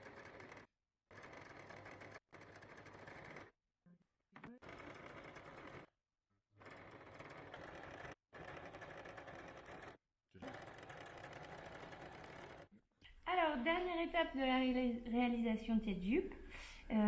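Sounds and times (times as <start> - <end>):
sewing machine stitching: 0.0 - 3.6, 4.3 - 5.9, 6.5 - 12.7.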